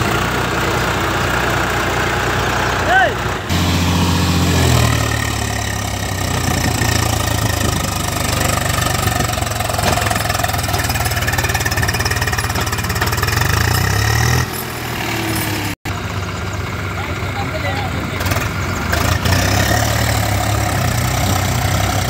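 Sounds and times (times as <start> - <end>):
tractor diesel engine running: 0.0 - 22.0.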